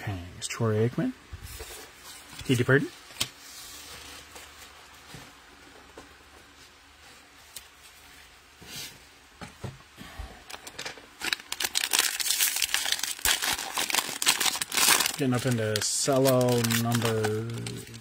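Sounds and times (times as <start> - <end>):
cellophane wrapper crinkling: 10.5 - 18.0.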